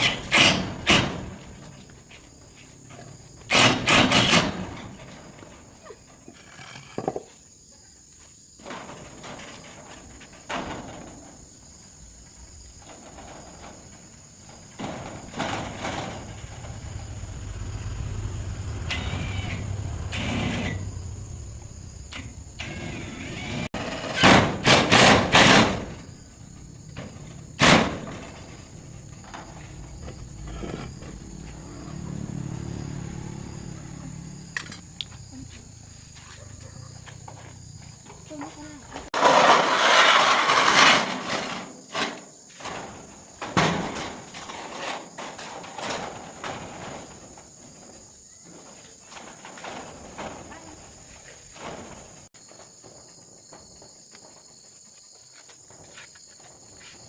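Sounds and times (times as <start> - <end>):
loud knocks and bangs: 12.8 - 35.3
low rumble: 15.6 - 23.8, 25.8 - 37.7.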